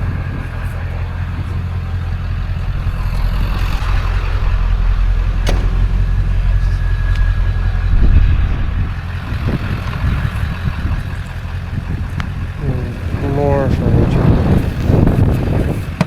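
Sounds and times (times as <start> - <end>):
vehicle engine and road rumble: 0.0 - 16.0
sharp click: 5.4 - 7.3.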